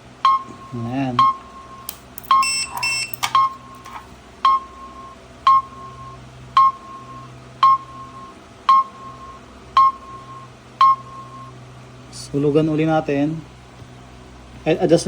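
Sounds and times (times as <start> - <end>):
electronic buzzer beeps: 0.2 - 3.9
timer click: 1.9 - 3.5.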